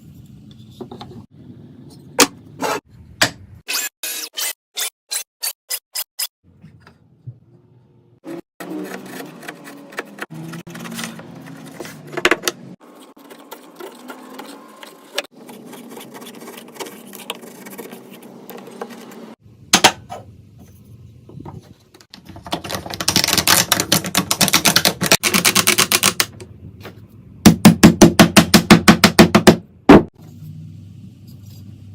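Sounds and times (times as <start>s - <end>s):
wood handling and scraping: 8.7s - 19.3s, 20.0s - 23.8s.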